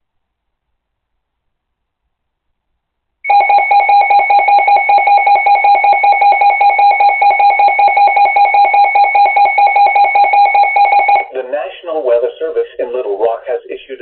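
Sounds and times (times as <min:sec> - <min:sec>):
rapid pulsing electronic beep: 0:03.3 - 0:11.4.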